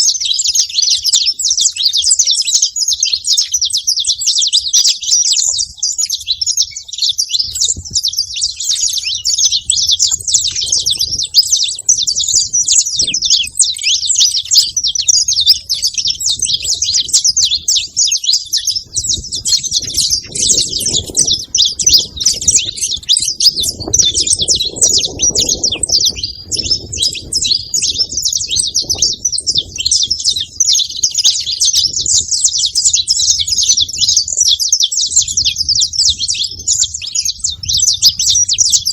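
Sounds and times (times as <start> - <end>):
finches chirping in dense chatter: 0.0 - 38.9.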